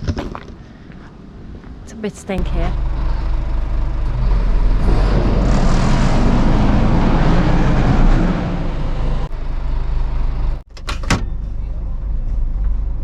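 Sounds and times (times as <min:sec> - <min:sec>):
lorry diesel engine idling: 0:02.4 - 0:13.0
loud rushing noise: 0:02.6 - 0:10.5.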